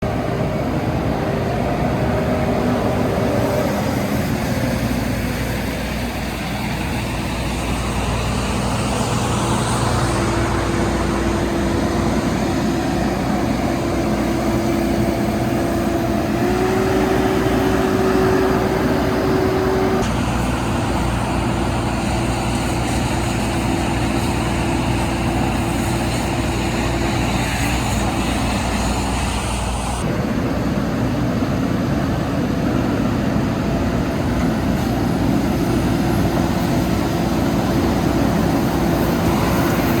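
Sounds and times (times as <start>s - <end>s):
thin whine: 0.0s - 30.2s
diesel engine running: 0.0s - 40.0s.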